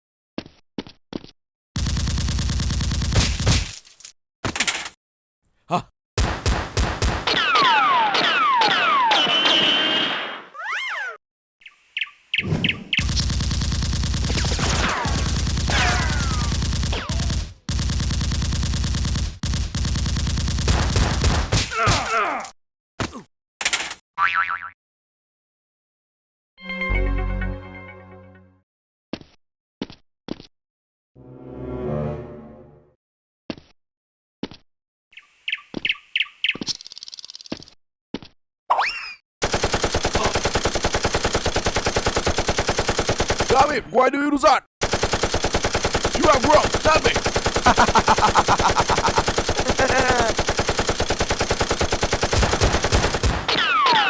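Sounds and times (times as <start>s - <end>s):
rapid automatic gunfire: 1.8s - 3.6s, 13.0s - 21.5s, 39.4s - 43.7s, 44.8s - 54.0s
machine-gun fire: 1.8s - 3.7s, 13.0s - 21.6s, 39.4s - 43.7s, 44.8s - 54.0s
patter of clicks and chirps: 35.2s - 37.8s.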